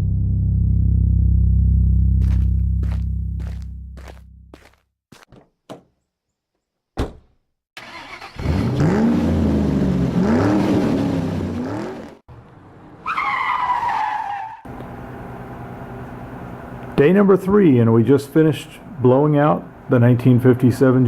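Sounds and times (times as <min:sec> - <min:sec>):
car engine revving: 0:07.8 - 0:12.2
tire screech: 0:07.8 - 0:14.7.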